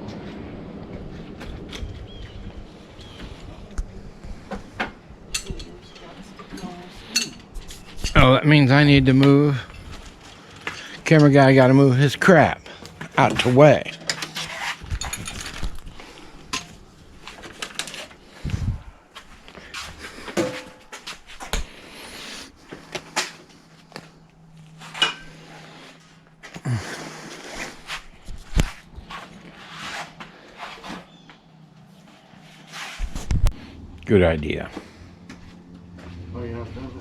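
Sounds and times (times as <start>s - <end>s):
objects being handled and moved: 1.0s - 36.3s.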